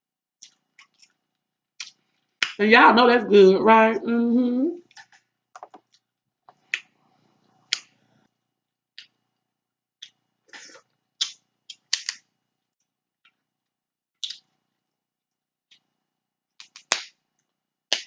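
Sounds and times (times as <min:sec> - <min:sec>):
sharp clicks and smacks of eating crab: 0:01.8 - 0:02.6, 0:04.9 - 0:07.0, 0:07.7 - 0:08.0, 0:09.0 - 0:09.2, 0:10.0 - 0:10.2, 0:11.2 - 0:12.3, 0:14.2 - 0:14.6, 0:16.6 - 0:18.0.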